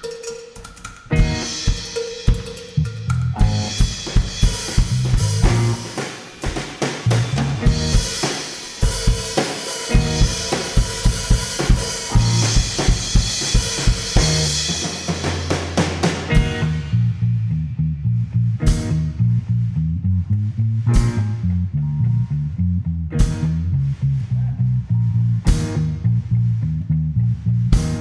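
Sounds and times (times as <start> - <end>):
drum kit: 0.0 - 17.0, 18.6 - 19.1, 20.9 - 21.4, 23.2 - 23.6, 25.4 - 26.0, 27.7 - 28.0
electric bass notes: 1.1 - 1.8, 2.7 - 6.0, 6.9 - 9.0, 9.9 - 28.0
live band instrumental: 1.1 - 2.4, 3.4 - 16.8.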